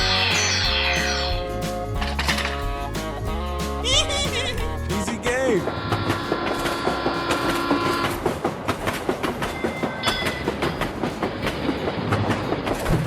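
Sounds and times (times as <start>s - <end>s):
train wheels clattering over rail joints: 5.0s - 13.0s.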